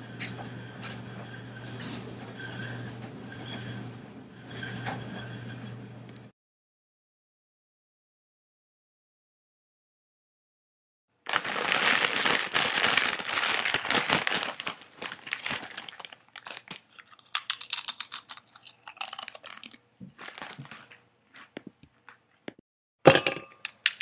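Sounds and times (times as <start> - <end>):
chip bag crinkling: 11.2 - 22.5
chewing chips crunches: 11.3 - 22.5.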